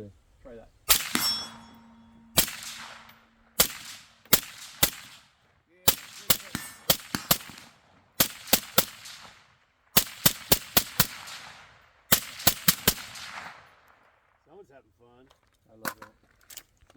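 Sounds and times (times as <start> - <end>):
gunshots with echo: 0.9 - 13.6.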